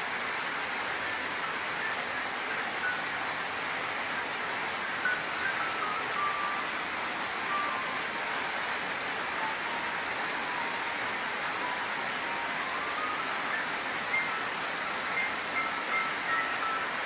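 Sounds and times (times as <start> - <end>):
rain-like hiss: 0.0 - 17.0
slow melody notes: 5.2 - 17.0.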